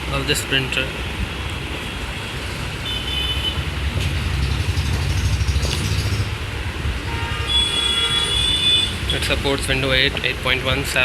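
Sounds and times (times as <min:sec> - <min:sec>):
road traffic rumbling: 0:00.0 - 0:11.0
vehicle engine close by: 0:03.6 - 0:06.7.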